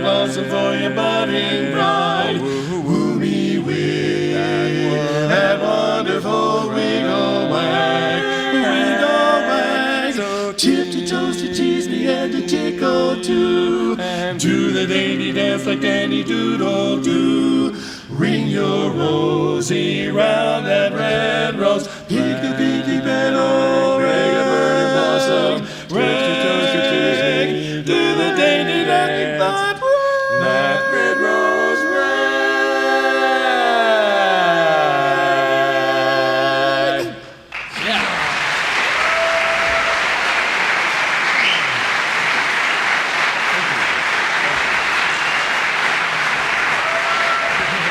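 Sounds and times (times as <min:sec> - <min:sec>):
barbershop quartet singing: 0:00.0 - 0:37.5
audience applause: 0:37.5 - 0:47.9.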